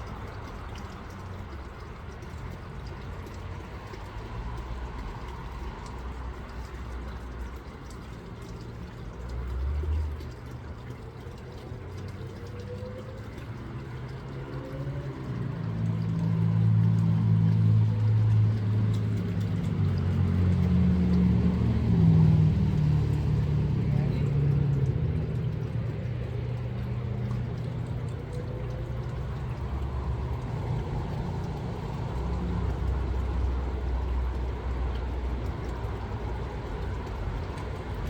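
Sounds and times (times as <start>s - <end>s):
vehicle engine rumbling: 11.9s - 38.0s.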